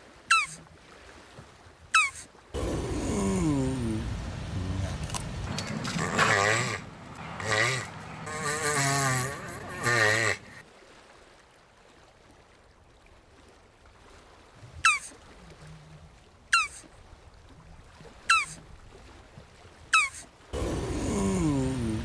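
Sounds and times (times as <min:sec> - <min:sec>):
wavering animal call: 0:00.3 - 0:00.6, 0:02.0 - 0:10.6, 0:14.8 - 0:15.2, 0:16.5 - 0:16.9, 0:18.3 - 0:18.6, 0:20.0 - 0:22.0.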